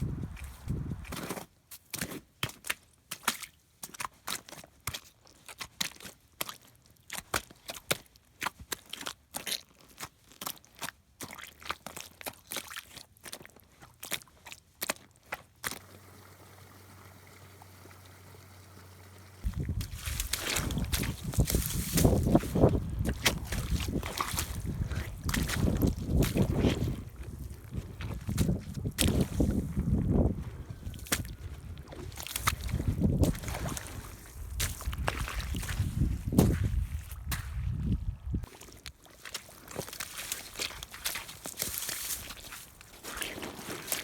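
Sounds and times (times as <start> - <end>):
steady low hum: 15.7 - 38.4.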